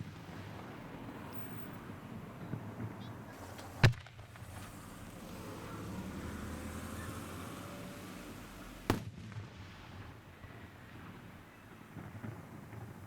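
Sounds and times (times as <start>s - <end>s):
low background noise: 0.0s - 13.0s
firework bang: 8.9s - 11.3s.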